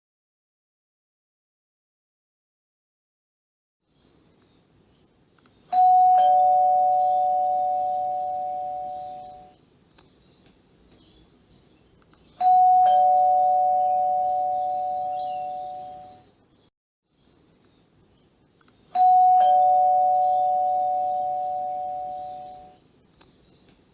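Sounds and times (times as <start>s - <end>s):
two-tone doorbell chime: 5.7s - 9.6s, 12.4s - 16.2s, 19.0s - 22.8s.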